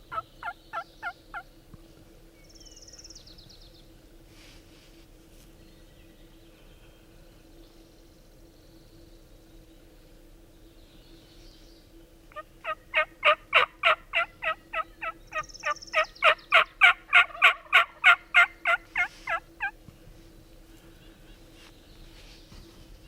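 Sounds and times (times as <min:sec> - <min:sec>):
turkey yelping: 0:12.3 - 0:19.7.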